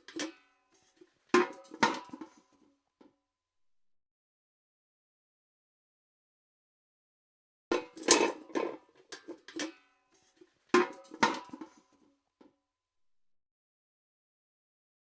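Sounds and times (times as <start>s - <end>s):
steel bucket clanking: 0.0s - 2.4s, 7.7s - 11.8s.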